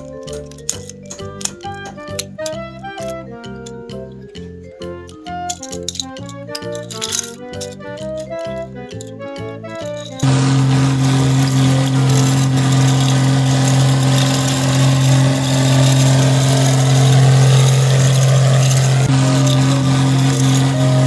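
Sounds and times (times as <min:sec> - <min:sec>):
loud engine-like drone: 0:10.2 - 0:21.0.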